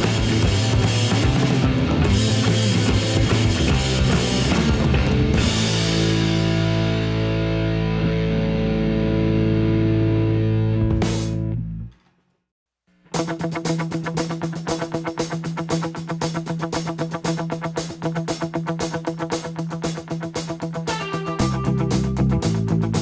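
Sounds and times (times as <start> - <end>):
rock music with drums and guitar: 0.0 - 11.9, 13.0 - 23.0
held guitar chord ringing: 20.9 - 22.4.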